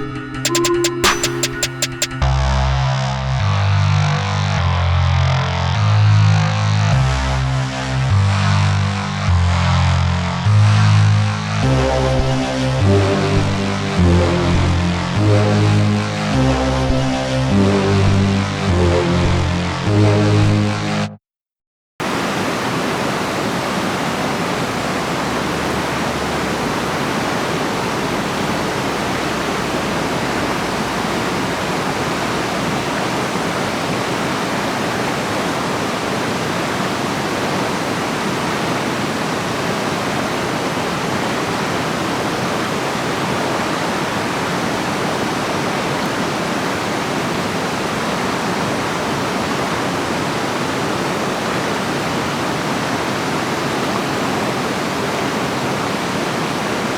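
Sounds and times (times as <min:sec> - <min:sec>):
flowing water rushing: 0:22.0 - 0:56.9.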